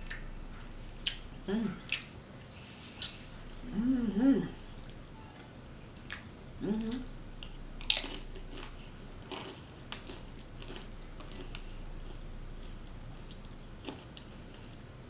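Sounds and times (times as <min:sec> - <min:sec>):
person chewing and crunching: 0:00.0 - 0:03.8, 0:05.7 - 0:15.0
person humming: 0:01.4 - 0:02.0, 0:03.6 - 0:04.8, 0:06.6 - 0:07.2.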